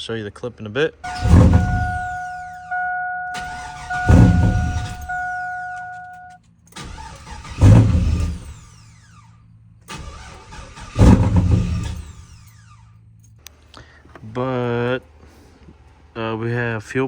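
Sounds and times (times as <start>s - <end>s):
car engine starting and dying: 1.0s - 14.3s
electronic warning tone: 1.1s - 6.4s.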